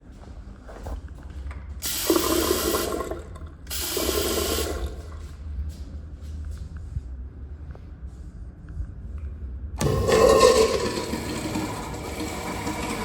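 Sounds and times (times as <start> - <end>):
low room hum: 0.0 - 13.0
water gushing from a tap: 1.8 - 5.0, 9.8 - 13.0.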